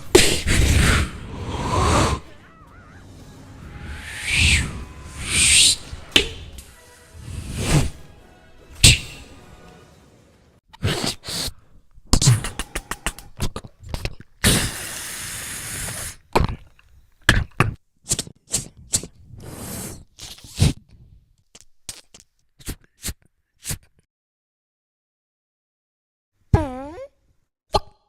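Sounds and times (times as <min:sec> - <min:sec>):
mouth clicks and pops: 0:12.1 - 0:14.6, 0:21.5 - 0:23.9
mouth hiss: 0:14.4 - 0:16.2.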